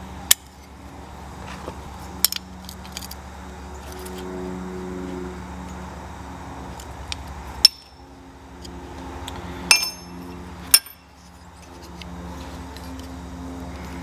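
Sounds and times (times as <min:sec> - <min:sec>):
steady low hum: 0:00.0 - 0:14.0
metal tools clinking: 0:09.7 - 0:12.0.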